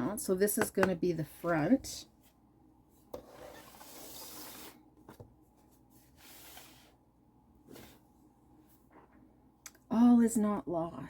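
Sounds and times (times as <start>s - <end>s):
hand rubbing book cover: 3.2s - 7.0s.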